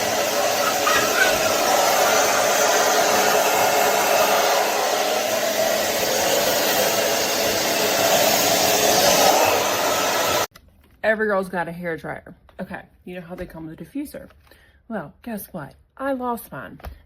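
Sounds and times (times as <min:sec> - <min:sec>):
hair dryer running: 0:00.0 - 0:10.5.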